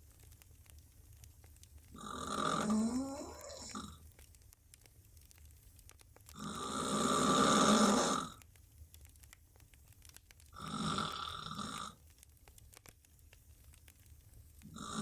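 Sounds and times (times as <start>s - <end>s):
woman snoring loudly: 2.0s - 3.9s, 6.4s - 8.4s, 10.6s - 11.9s, 14.7s - 15.0s.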